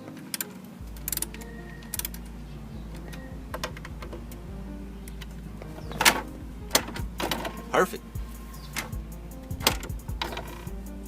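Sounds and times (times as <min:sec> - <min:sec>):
latch snapping shut: 0:02.9 - 0:04.4, 0:05.1 - 0:07.7, 0:08.8 - 0:09.0, 0:09.6 - 0:10.7
glove box clicks and knocks: 0:03.0 - 0:04.4, 0:05.2 - 0:07.7, 0:09.6 - 0:10.7.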